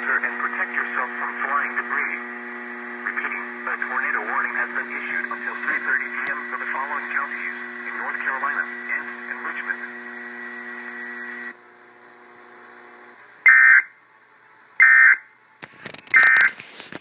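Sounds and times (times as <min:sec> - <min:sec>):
steady broadcast hum: 0:00.0 - 0:17.0
short data bursts: 0:13.4 - 0:14.0, 0:16.0 - 0:16.6
clicks and crackles: 0:15.6 - 0:17.0.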